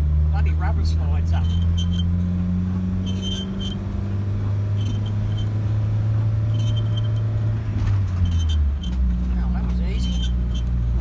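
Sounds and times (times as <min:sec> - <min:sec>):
vehicle engine and road drone: 0:00.0 - 0:11.0
short high squeak: 0:01.3 - 0:02.2, 0:03.0 - 0:04.0, 0:04.7 - 0:05.6, 0:06.4 - 0:07.3, 0:08.1 - 0:09.0, 0:09.9 - 0:10.7.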